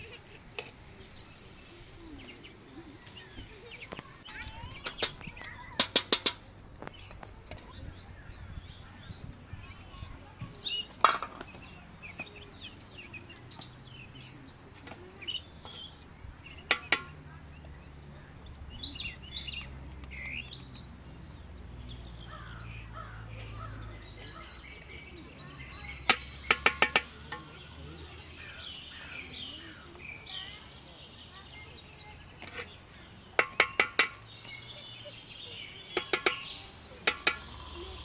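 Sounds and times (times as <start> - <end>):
small birds chirping: 0.0 - 38.0
sharp clicks: 19.5 - 20.8.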